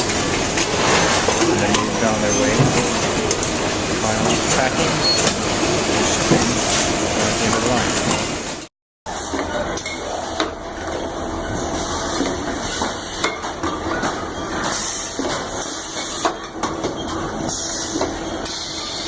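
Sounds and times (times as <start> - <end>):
machinery running: 0.0 - 19.0.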